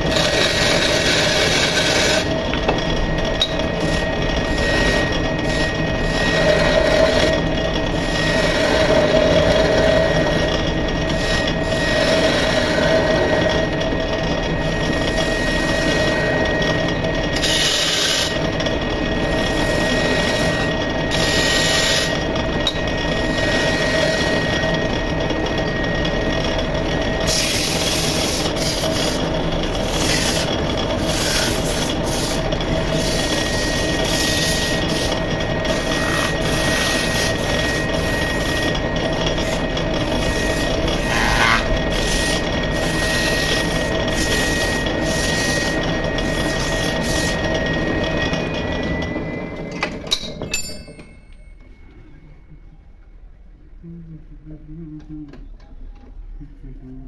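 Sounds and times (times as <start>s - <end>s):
tool scraping spinning wood: 0.0s - 49.2s
wood lathe motor hum: 0.0s - 49.9s
high hiss of cutting: 41.0s - 41.7s.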